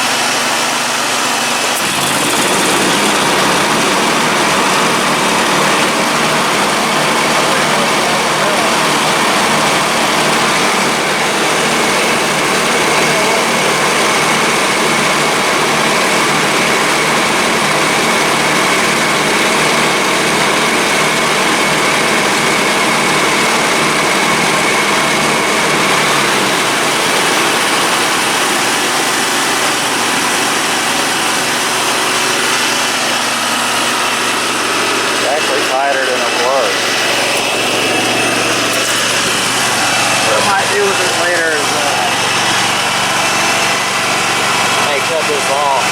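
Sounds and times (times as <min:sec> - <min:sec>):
mower engine running: 0:00.0 - 0:45.9
high whine: 0:30.9 - 0:45.9.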